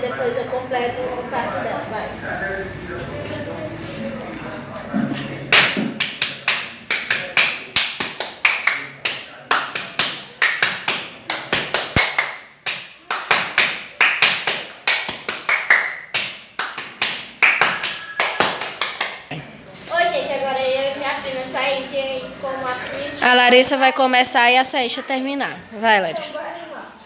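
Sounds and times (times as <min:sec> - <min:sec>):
hand claps and slaps: 0:05.5 - 0:19.3.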